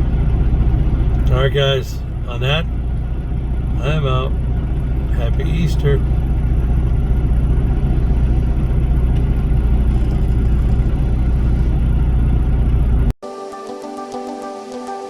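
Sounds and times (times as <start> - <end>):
truck engine idling: 0.0 - 13.2
music: 13.2 - 15.0.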